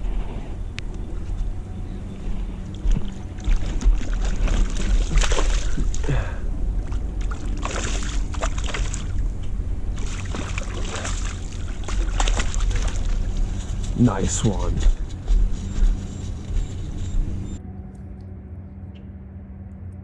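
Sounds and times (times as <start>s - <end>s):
wind rumble on microphone: 0.0s - 18.3s
water splashing: 2.7s - 13.8s.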